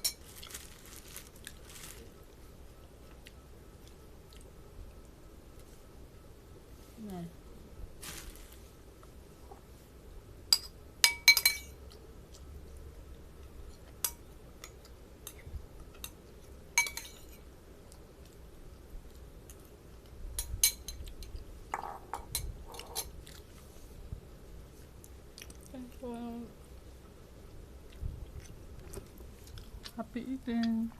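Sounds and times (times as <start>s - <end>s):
utensil clinking against a dish: 10.5s - 11.8s, 16.8s - 17.4s.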